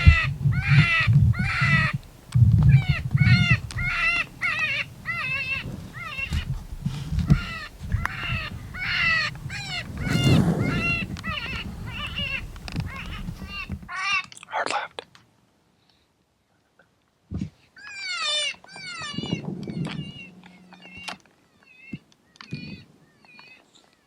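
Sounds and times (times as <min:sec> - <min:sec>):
low rumble: 0:00.0 - 0:13.9, 0:19.0 - 0:21.2.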